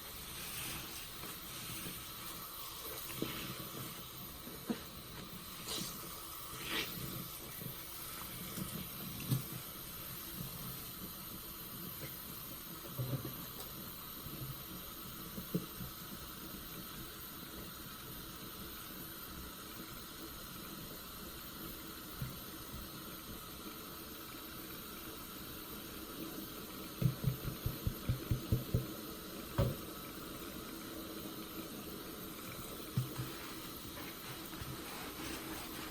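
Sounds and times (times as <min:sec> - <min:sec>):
steady hiss: 0:00.0 - 0:35.9
soapy sponge squelching: 0:33.1 - 0:35.9.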